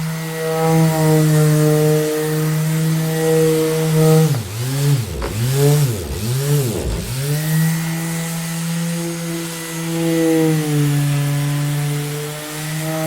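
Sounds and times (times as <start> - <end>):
orbital sander motor humming: 4.3 - 7.4.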